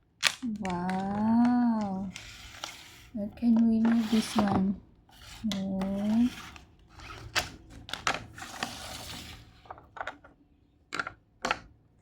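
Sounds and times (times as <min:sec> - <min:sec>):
puzzle pieces clacking: 0:00.2 - 0:04.7
puzzle pieces scraping: 0:00.2 - 0:10.2.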